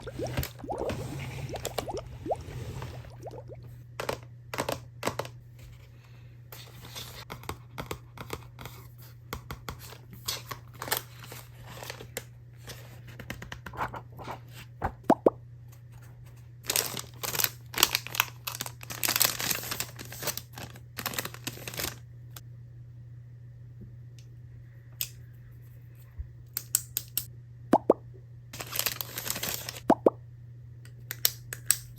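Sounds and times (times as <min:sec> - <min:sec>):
low steady hum: 0:00.0 - 0:04.6, 0:22.0 - 0:26.6
plastic and paper crinkling: 0:16.6 - 0:22.0, 0:28.6 - 0:29.8.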